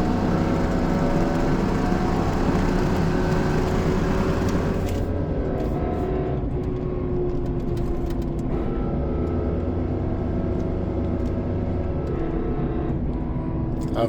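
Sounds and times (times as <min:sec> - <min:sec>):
pickup truck engine accelerating: 0:00.0 - 0:05.2.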